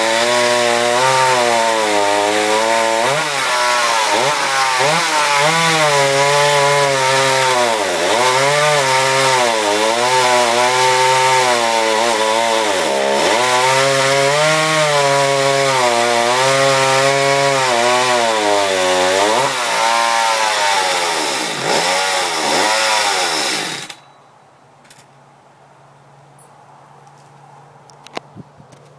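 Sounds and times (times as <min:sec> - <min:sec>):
chainsaw running: 0:00.0 - 0:24.0.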